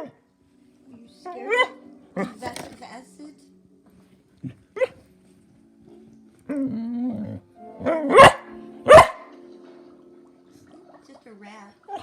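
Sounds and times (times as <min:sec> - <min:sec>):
dog barking: 0:01.5 - 0:02.4, 0:08.1 - 0:09.3.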